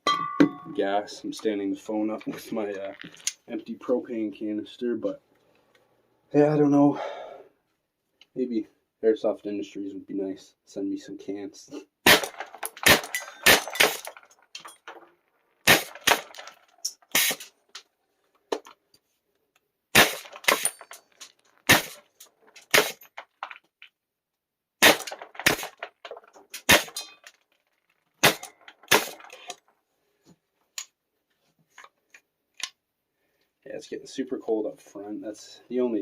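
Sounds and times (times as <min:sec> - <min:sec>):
airsoft shotgun shots: 0:12.0 - 0:14.1, 0:15.6 - 0:16.4, 0:17.1 - 0:17.4, 0:19.9 - 0:20.7, 0:21.7 - 0:22.0, 0:22.7 - 0:23.0, 0:24.8 - 0:25.8, 0:26.6 - 0:27.0, 0:28.2 - 0:29.2
pellets striking target: 0:12.1 - 0:14.2, 0:15.7 - 0:17.4, 0:20.0 - 0:20.9, 0:24.8 - 0:25.8, 0:26.6 - 0:27.2, 0:28.2 - 0:29.3.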